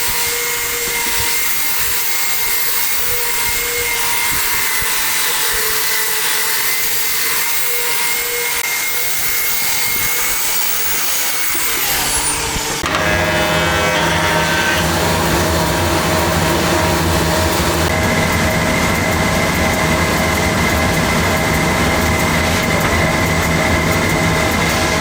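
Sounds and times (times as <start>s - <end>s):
electric motor drone: 0.0s - 25.0s
high whine: 11.9s - 25.0s.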